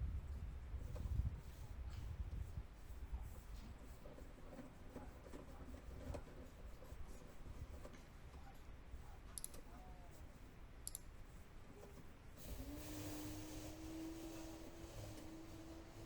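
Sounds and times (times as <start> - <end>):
small sharp clicks: 9.3 - 9.7, 10.8 - 11.1
soft ticks: 9.4 - 9.6, 10.8 - 11.1.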